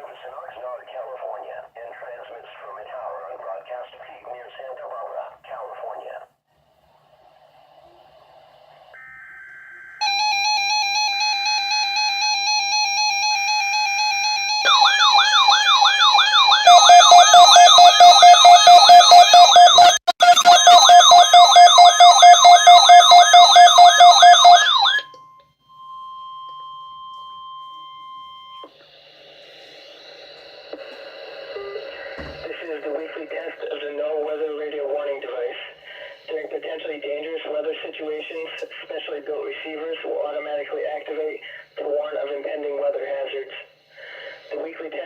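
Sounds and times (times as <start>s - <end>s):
warbling electronic alarm: 8.9s - 32.6s
steady warning tone: 8.9s - 34.4s.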